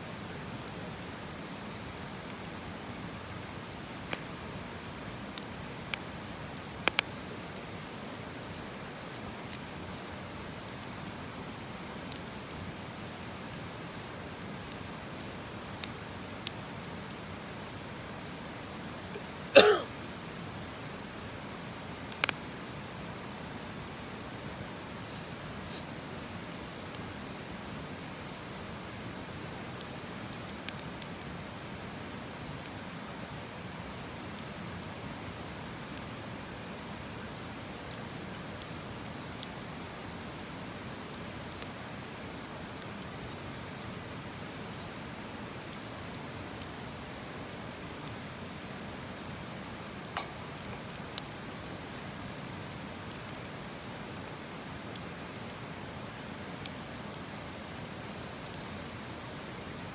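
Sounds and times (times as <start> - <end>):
campfire hissing: 0.0 - 59.9
fire crackles and pops: 0.0 - 59.9.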